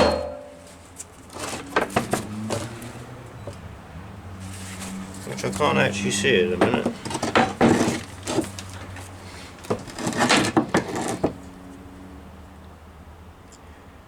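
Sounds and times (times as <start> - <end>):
metal parts knocking and scraping: 0.0 - 2.8, 6.5 - 11.4.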